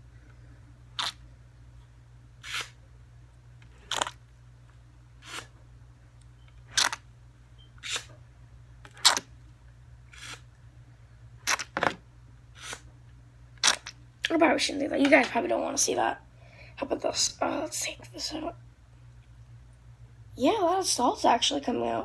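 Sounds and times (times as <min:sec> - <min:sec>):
faint low hum: 0:00.0 - 0:22.0
sharp scratchy strokes: 0:02.4 - 0:02.8.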